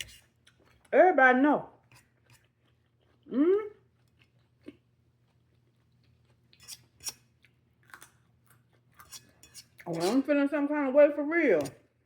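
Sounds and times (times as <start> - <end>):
quiet chewing: 1.9 - 10.1
person humming: 3.3 - 3.8.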